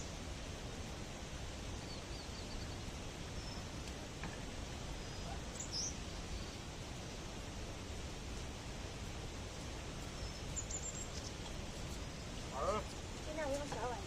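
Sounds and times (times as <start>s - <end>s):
outdoor background noise: 0.0s - 14.0s
faint bird chirps: 4.9s - 6.7s, 9.9s - 13.6s.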